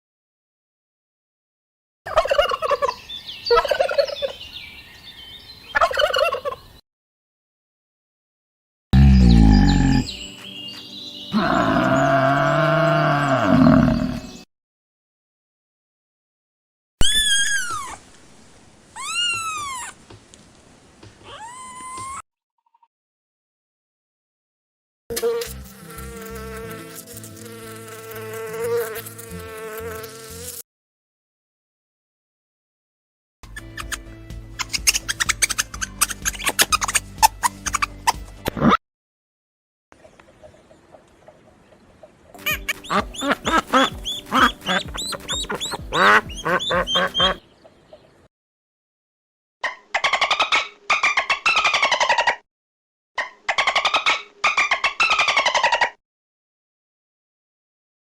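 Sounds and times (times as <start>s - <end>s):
warbling animal calls: 11.3s - 14.3s, 42.5s - 47.4s
insect buzzing: 25.1s - 30.6s, 42.4s - 47.4s.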